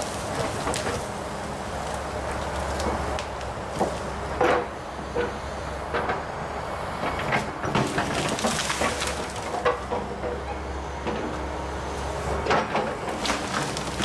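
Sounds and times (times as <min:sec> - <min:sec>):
branches cracking and snapping: 0:00.0 - 0:04.2, 0:07.8 - 0:09.9, 0:12.8 - 0:14.0
excavator engine running: 0:00.0 - 0:14.0.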